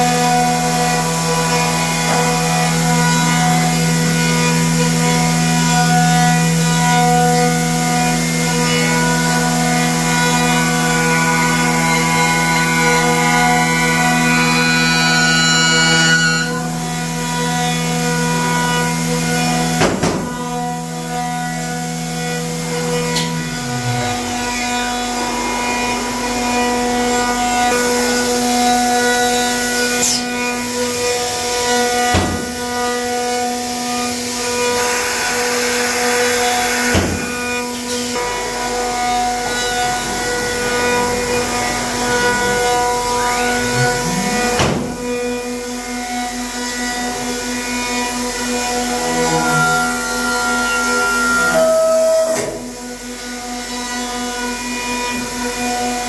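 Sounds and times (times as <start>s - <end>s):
router spindle whine: 0.0s - 56.0s
rasping cutting noise: 9.9s - 19.7s, 20.3s - 45.5s.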